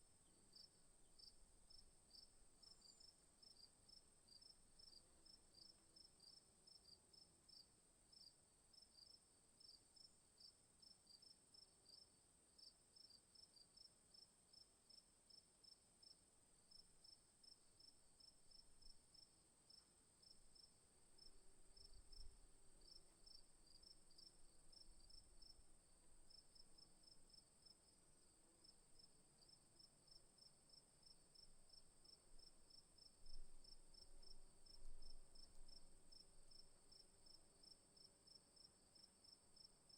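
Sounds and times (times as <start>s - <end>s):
crickets chirping: 16.7s - 39.9s.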